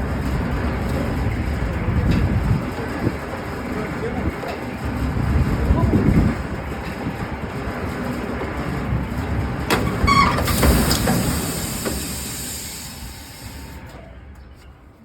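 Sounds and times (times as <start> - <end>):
industrial machine running: 0.0 - 14.9
high metallic squeal: 9.8 - 13.9.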